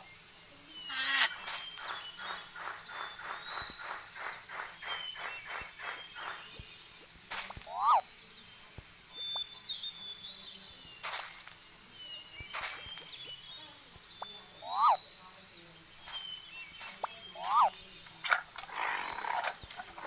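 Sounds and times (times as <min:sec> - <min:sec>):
high bird chirps: 0:00.0 - 0:07.0, 0:07.6 - 0:11.2, 0:11.9 - 0:20.0
repeated animal calls: 0:00.8 - 0:06.4, 0:07.5 - 0:08.1, 0:14.2 - 0:15.1, 0:16.8 - 0:20.0.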